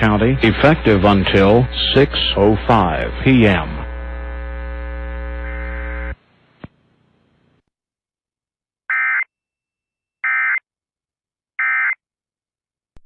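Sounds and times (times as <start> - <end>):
electrical buzz and hum: 0.0 - 7.6.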